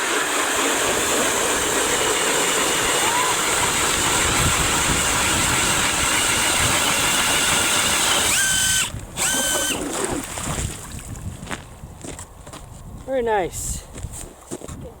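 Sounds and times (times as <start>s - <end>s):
drill whining through ice: 0.0s - 10.2s.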